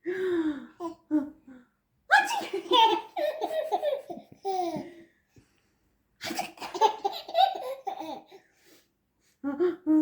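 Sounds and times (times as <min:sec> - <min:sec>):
baby laughing: 0:02.2 - 0:05.0, 0:06.2 - 0:08.4.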